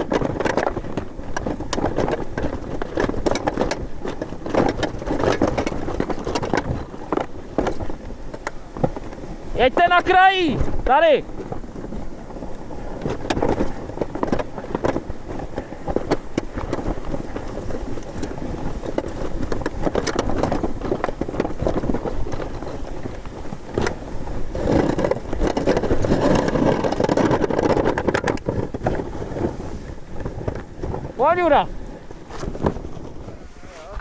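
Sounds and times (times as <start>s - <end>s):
sled knocking over bumps: 0.0s - 34.0s
sled skis hissing through snow: 28.4s - 34.0s.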